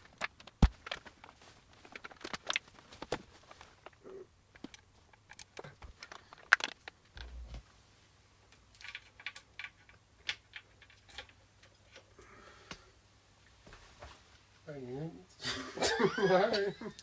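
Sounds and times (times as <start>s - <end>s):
small clicks and taps: 0.0s - 7.6s, 8.5s - 12.9s.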